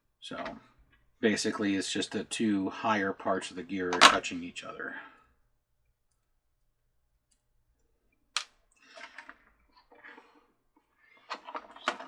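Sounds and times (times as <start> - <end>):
plastic parts clicking and rattling: 11.2 - 12.0.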